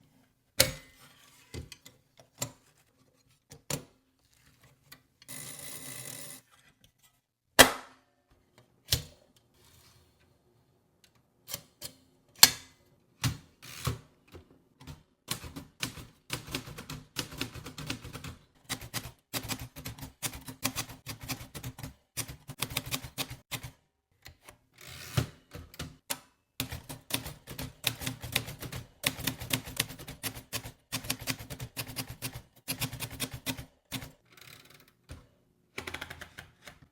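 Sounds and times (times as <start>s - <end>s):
rapid typewriter typing: 15.3s - 23.7s, 26.6s - 34.2s.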